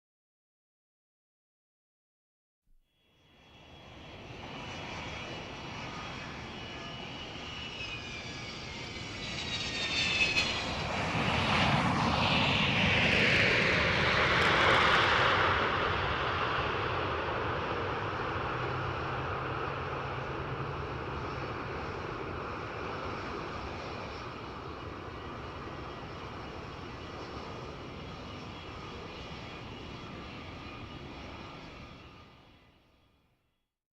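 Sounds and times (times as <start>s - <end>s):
jet engine whine: 2.9s - 33.5s
jet rumble: 3.5s - 32.6s.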